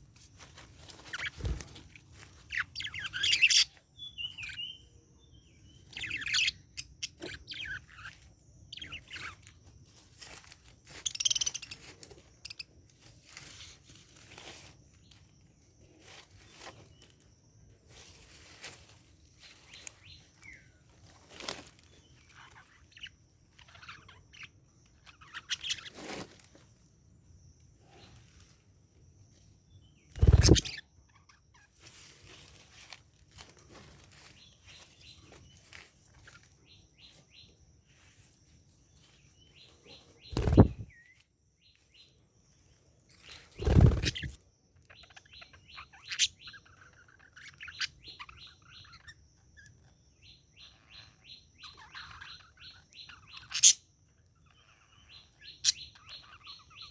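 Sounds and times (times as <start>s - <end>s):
budgerigars chirping: 1.1s - 4.9s, 5.8s - 9.4s, 11.0s - 11.8s, 22.3s - 26.0s, 30.2s - 30.8s, 40.1s - 40.9s, 44.9s - 53.8s, 54.4s - 56.9s.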